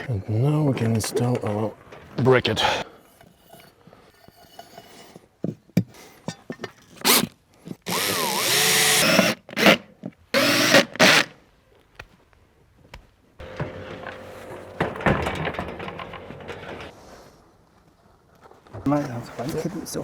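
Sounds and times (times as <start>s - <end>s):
power drill running: 7.9s - 9.4s, 10.4s - 11.3s.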